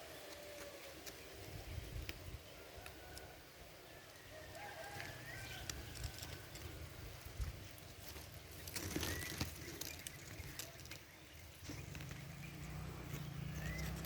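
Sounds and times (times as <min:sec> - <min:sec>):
low engine hum: 0:11.3 - 0:14.0.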